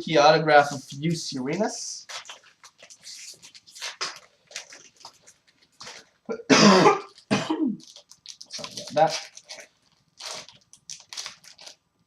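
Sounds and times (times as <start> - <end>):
trading cards and wrappers rustling: 1.4 - 6.3, 7.1 - 11.9
person coughing: 6.3 - 7.8.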